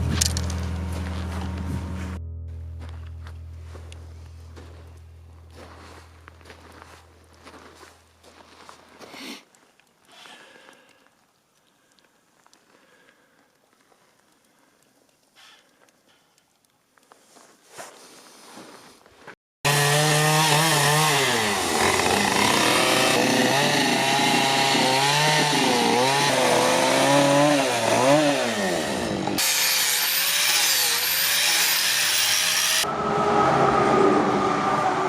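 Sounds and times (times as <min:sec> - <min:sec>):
chainsaw cutting wood: 0:19.7 - 0:32.8.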